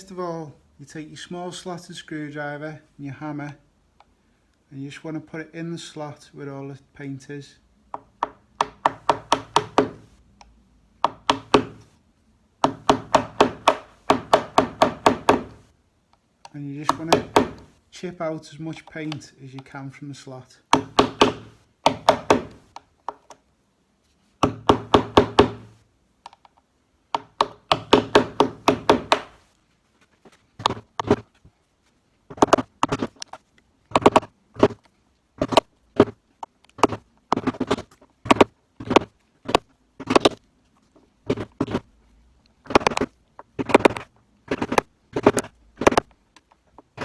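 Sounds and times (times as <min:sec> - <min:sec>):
hammer tapping screwdriver: 0:08.0 - 0:10.2, 0:11.0 - 0:11.9, 0:12.6 - 0:15.7, 0:16.8 - 0:17.8, 0:20.7 - 0:23.4, 0:24.4 - 0:25.8, 0:27.2 - 0:29.4, 0:33.9 - 0:34.8, 0:36.8 - 0:40.4.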